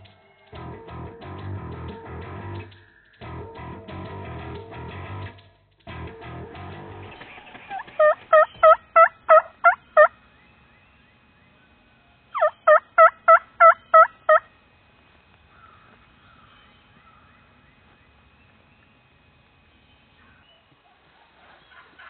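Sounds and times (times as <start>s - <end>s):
turkey yelping: 7.3s - 10.1s, 12.4s - 14.4s.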